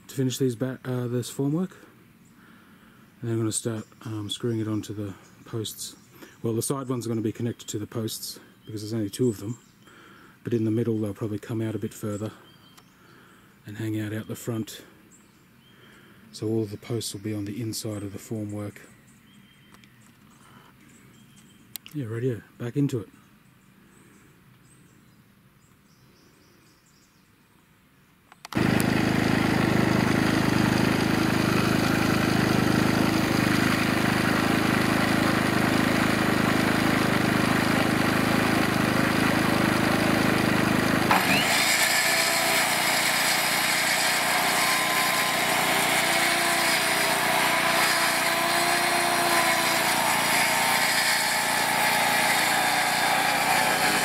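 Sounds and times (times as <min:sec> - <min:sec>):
small engine running: 0:28.5 - 0:54.0.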